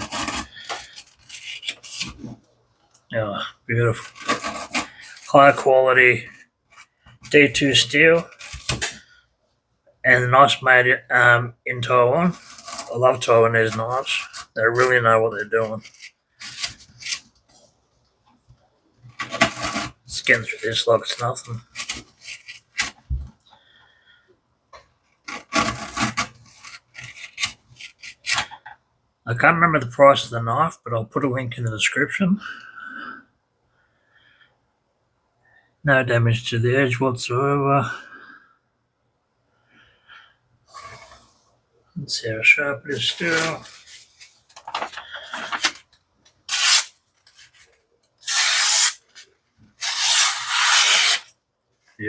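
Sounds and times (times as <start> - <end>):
knife sawing through rope: 0.0 - 2.1, 46.5 - 46.9, 48.2 - 49.0, 49.8 - 51.3.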